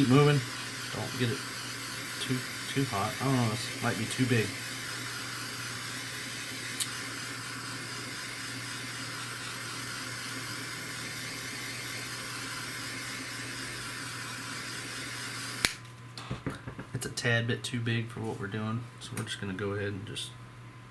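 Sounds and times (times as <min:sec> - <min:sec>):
torch burning with steady hiss: 0:00.0 - 0:17.0
small click: 0:15.6 - 0:15.8.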